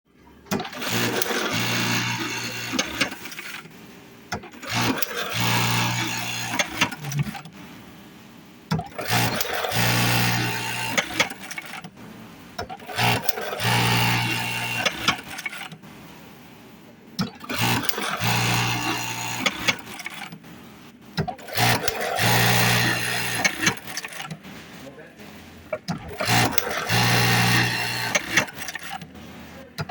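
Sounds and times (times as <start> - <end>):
sewing machine clacks: 0.5 - 3.7, 8.7 - 11.9, 12.6 - 15.8, 17.2 - 20.4, 21.2 - 24.4, 25.8 - 29.2
sewing machine stitching: 0.5 - 3.7, 4.3 - 7.5, 8.7 - 12.0, 12.6 - 15.8, 17.2 - 20.4, 21.1 - 24.6, 25.7 - 29.9.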